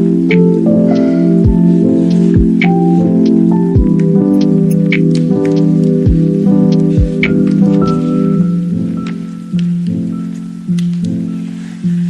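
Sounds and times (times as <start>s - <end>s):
synth chords over a beat: 0.0s - 11.4s.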